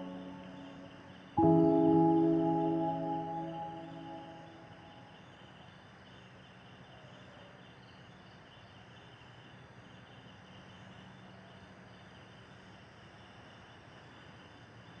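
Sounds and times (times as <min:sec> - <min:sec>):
low ambient drone: 0:00.0 - 0:05.4.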